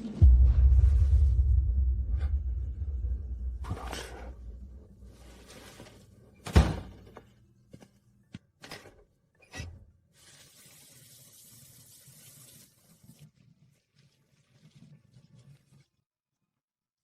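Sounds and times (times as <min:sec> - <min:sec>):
loud sharp thud: 0:00.2 - 0:04.7.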